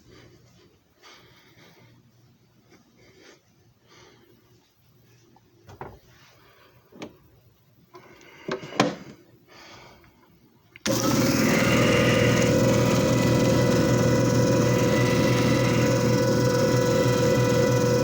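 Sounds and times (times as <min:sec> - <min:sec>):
machine motor humming and whining: 0:10.8 - 0:18.0.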